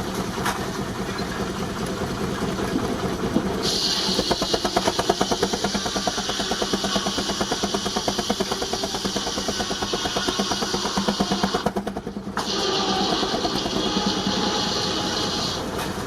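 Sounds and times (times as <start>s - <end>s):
steam engine exhaust beats: 0.0s - 16.0s
steam hiss: 3.6s - 16.0s.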